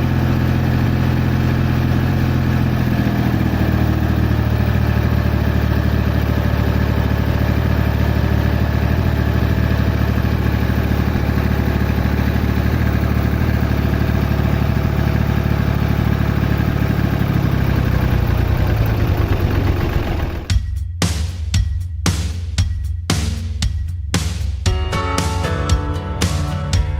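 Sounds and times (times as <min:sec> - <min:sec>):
small engine running: 0:00.0 - 0:20.5.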